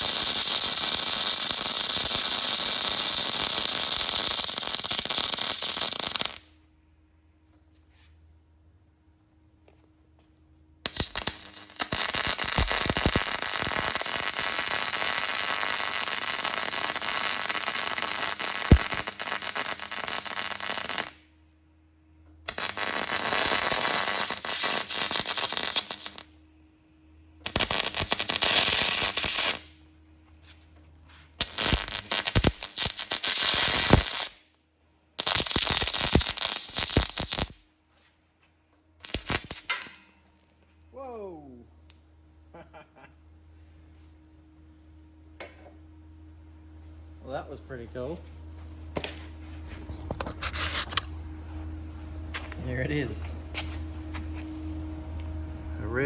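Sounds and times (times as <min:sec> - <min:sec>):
welding arc crackling: 0:00.0 - 0:06.5, 0:10.9 - 0:21.2, 0:22.5 - 0:26.3, 0:27.4 - 0:29.8, 0:31.4 - 0:34.4, 0:35.2 - 0:37.6, 0:39.0 - 0:40.0.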